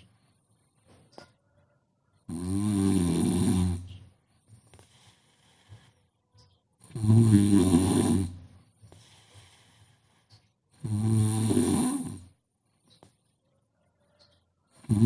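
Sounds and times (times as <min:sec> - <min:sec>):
person snoring: 0:02.3 - 0:03.8, 0:06.9 - 0:08.4, 0:10.8 - 0:12.3
soft breathing: 0:03.9 - 0:06.6, 0:08.5 - 0:10.7.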